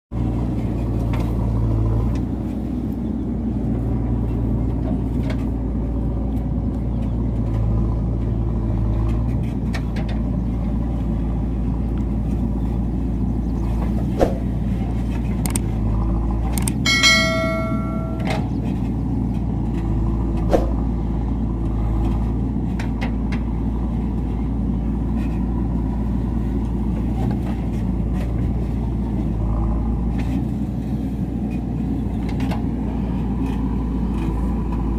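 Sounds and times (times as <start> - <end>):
heavy vehicle engine rumbling: 0.1 - 34.9
steady high tone: 16.9 - 18.5.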